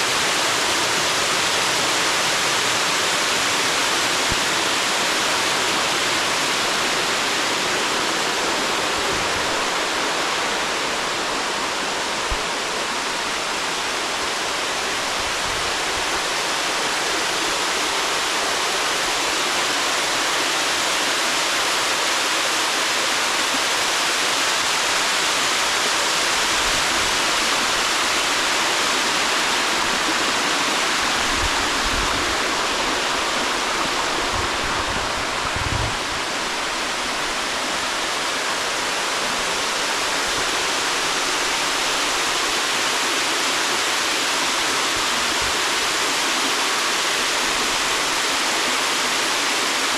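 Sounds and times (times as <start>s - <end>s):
water rushing over waterfall: 0.0s - 49.9s.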